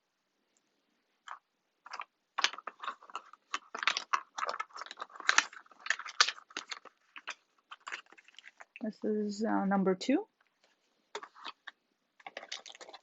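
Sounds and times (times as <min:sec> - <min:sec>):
packaging crinkling and rustling: 0:01.3 - 0:08.8, 0:10.5 - 0:13.0.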